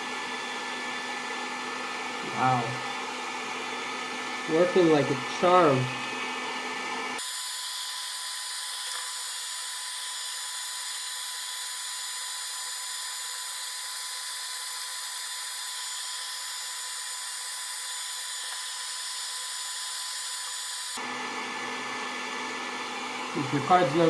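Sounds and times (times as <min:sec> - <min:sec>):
hot-air blower hissing: 0:00.0 - 0:24.0.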